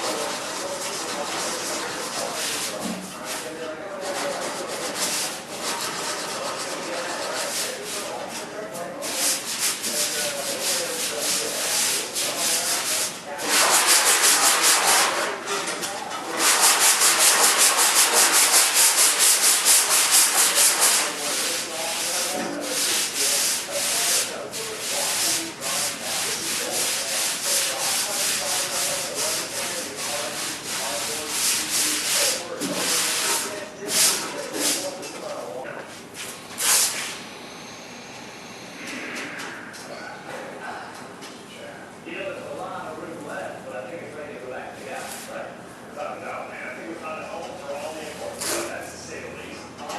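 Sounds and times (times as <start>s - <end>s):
sandpaper scratching: 0.0s - 2.8s, 4.0s - 8.1s, 9.1s - 15.3s, 16.3s - 34.9s.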